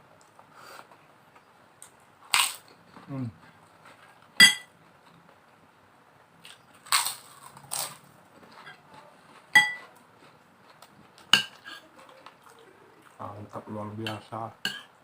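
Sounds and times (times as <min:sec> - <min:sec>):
crunchy bites into crackers: 0:02.3 - 0:02.7, 0:06.4 - 0:08.1
metal spoon clinking on plate: 0:04.4 - 0:04.7, 0:09.5 - 0:09.8.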